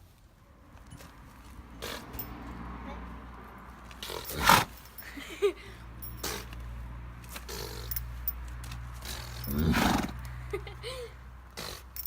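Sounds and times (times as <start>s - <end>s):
pony snorting: 1.8s - 2.3s, 4.0s - 4.8s, 6.2s - 6.5s, 7.4s - 8.1s, 9.0s - 10.3s, 11.5s - 12.0s.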